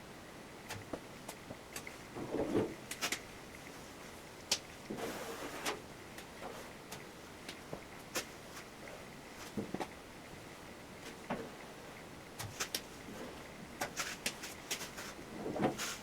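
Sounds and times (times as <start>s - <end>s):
rustling handling noise: 12.4s - 16.0s.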